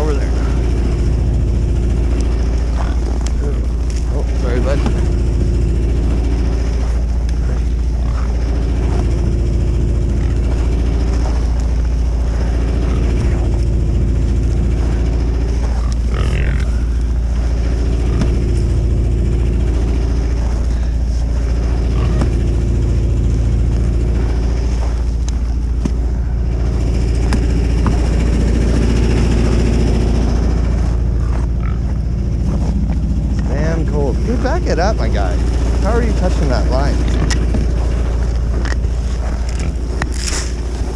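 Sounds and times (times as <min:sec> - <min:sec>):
engine rumbling: 0:00.0 - 0:40.9.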